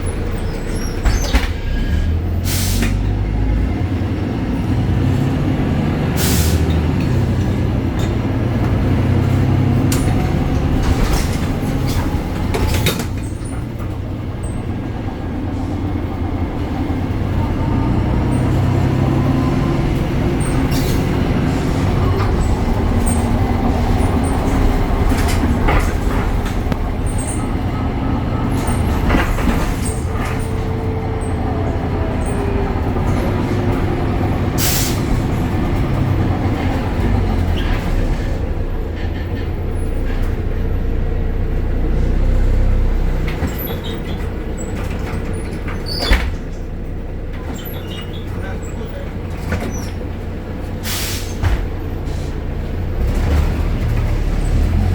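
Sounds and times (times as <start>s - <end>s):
bus diesel engine drone: 0.0s - 54.9s
sharp knocks and rattles: 20.6s - 30.9s.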